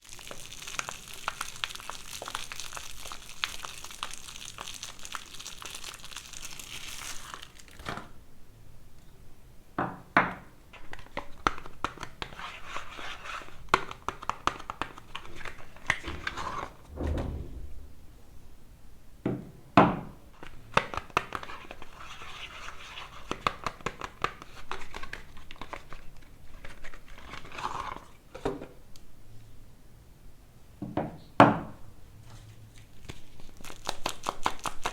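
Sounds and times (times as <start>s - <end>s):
soap wrappers crinkling and tearing: 0.0s - 8.1s, 10.8s - 16.0s, 20.4s - 28.1s, 32.7s - 34.9s.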